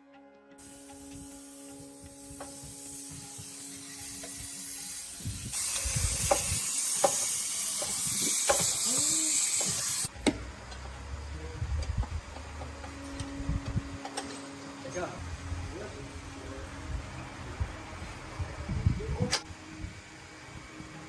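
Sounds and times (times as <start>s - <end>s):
steady hissing: 0.6s - 10.1s.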